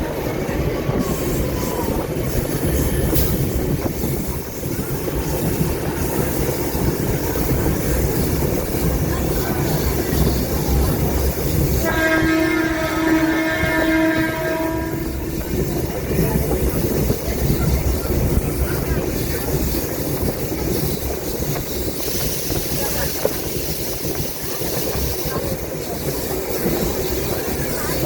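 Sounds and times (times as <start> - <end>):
train rumbling: 0.0 - 28.0
train horn: 11.8 - 15.4.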